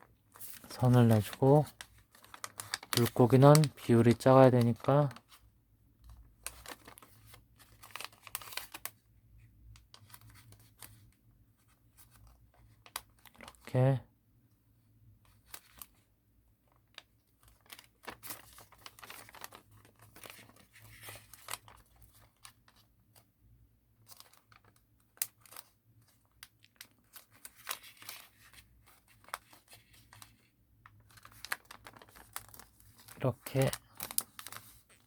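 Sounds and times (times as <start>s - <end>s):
paper folding and crinkling: 0.0s - 14.0s, 15.2s - 23.3s, 24.0s - 35.0s.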